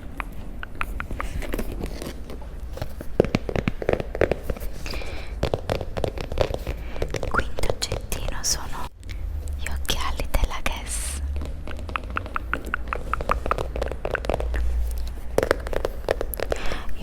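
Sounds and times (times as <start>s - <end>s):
small objects clicking and tapping: 11.2s - 16.8s.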